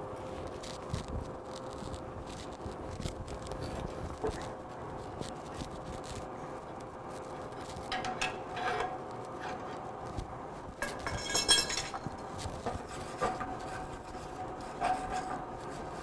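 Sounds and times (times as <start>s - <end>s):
faint hum: 0.0s - 16.0s
metal tools clicking and scraping: 7.6s - 9.8s, 10.8s - 13.4s.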